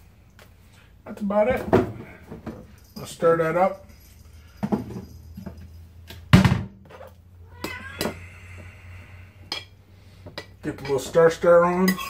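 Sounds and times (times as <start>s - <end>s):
kitchenware knocking and clinking: 4.6s - 8.2s, 10.4s - 12.0s
cat meowing: 7.4s - 8.6s.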